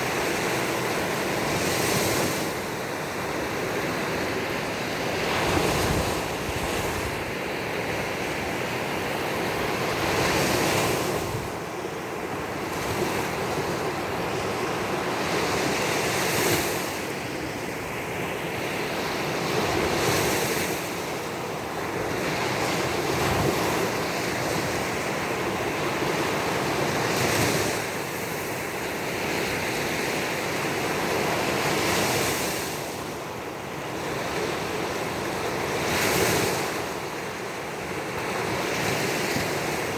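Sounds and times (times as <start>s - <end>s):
waves breaking on shore: 0.0s - 39.9s
wind on microphone: 5.0s - 8.6s.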